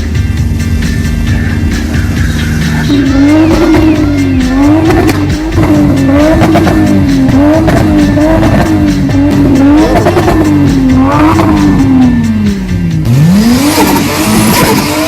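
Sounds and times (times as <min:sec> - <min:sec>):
car engine revving hard: 0:01.2 - 0:15.0
exhaust crackles and pops: 0:01.8 - 0:11.8.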